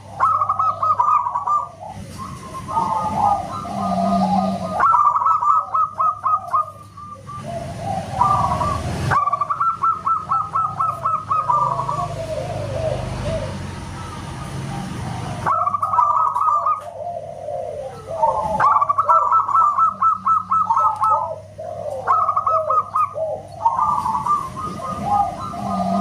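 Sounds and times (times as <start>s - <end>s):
dove whistled coos: 0.0s - 26.0s
soft low cooing: 1.9s - 5.2s, 16.8s - 26.0s.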